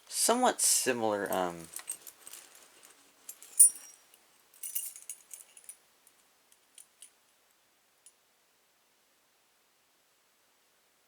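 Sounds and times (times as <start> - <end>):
keys jingling: 1.3 - 5.8.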